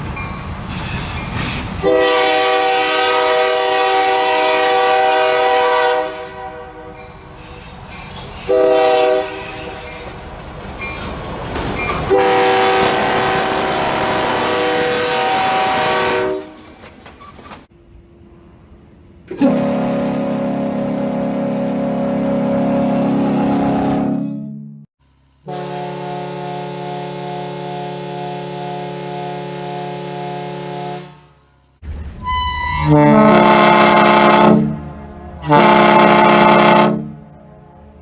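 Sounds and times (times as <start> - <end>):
passing train rumble: 0.0 - 38.0
locomotive air horn blasts: 1.8 - 7.0, 8.5 - 9.9, 12.1 - 16.7, 19.3 - 31.4, 32.2 - 38.0.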